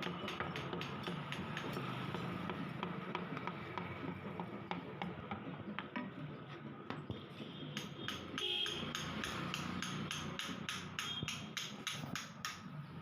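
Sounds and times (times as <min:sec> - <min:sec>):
hand tools clicking on metal: 0:07.8 - 0:12.7.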